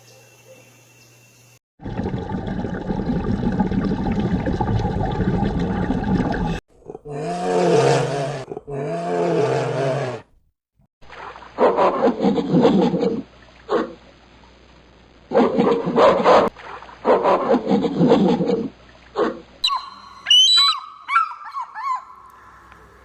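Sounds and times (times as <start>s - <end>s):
animal growling roar: 6.8s - 10.3s
long roaring calls: 7.0s - 10.3s, 19.6s - 23.0s
sharp animal calls: 19.6s - 23.0s.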